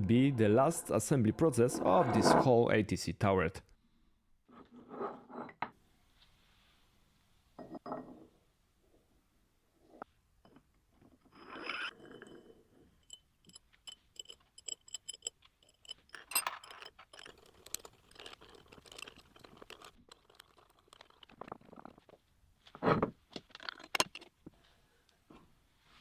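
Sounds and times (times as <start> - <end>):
metal parts clicking and scraping: 13.0 - 22.2, 23.5 - 24.4.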